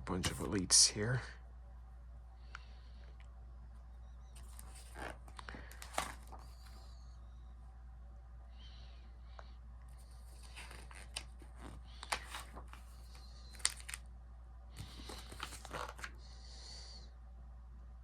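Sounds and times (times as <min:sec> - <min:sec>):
low steady hum: 0:00.0 - 0:18.0
book pages rustling: 0:04.4 - 0:06.9, 0:09.9 - 0:14.1, 0:14.8 - 0:16.2.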